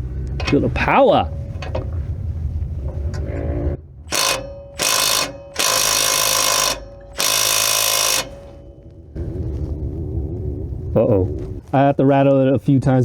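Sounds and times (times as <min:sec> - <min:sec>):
motor whine: 0:01.3 - 0:11.6
impact wrench hammering: 0:04.1 - 0:08.8.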